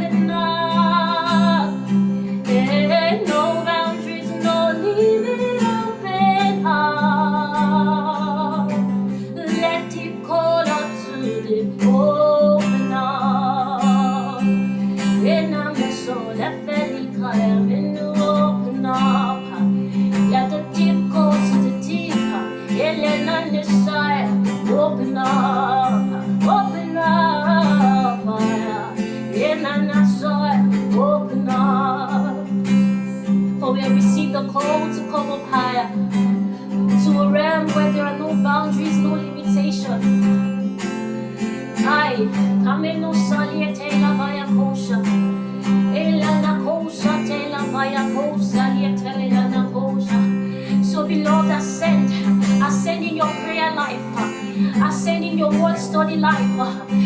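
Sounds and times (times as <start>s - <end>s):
person singing: 0.0s - 32.6s, 33.5s - 40.4s, 41.4s - 57.0s
acoustic guitar: 0.0s - 57.0s.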